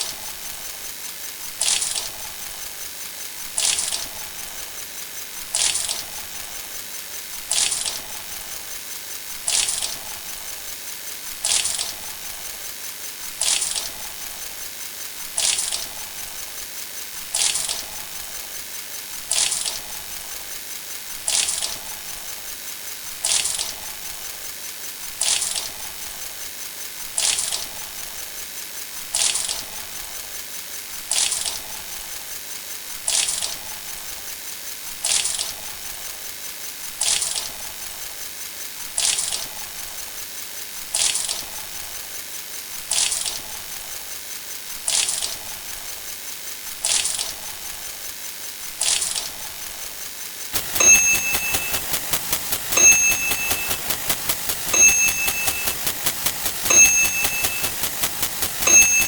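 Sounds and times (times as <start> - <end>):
fast ticking: 50.6 - 59.0
short bright sound effect: 50.6 - 59.0.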